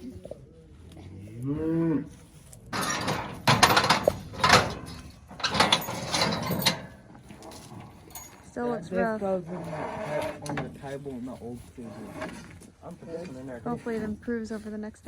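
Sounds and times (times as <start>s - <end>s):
cow mooing: 1.1s - 2.3s.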